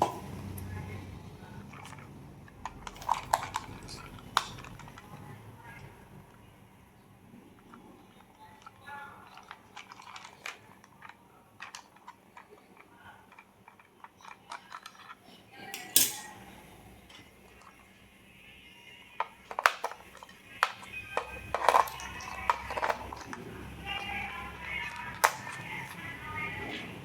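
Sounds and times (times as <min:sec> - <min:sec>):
toy and packaging clicks and clatters: 0:01.6 - 0:05.8, 0:07.6 - 0:16.1, 0:19.1 - 0:27.0.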